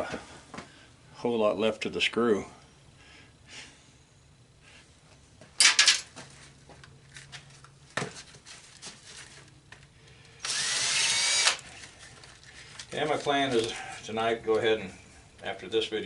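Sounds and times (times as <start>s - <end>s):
cordless drill running: 10.4s - 11.7s.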